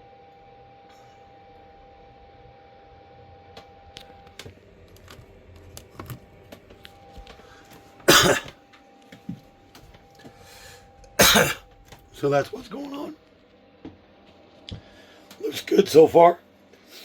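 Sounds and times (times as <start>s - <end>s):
loud cough: 8.1s - 8.5s, 11.2s - 11.6s.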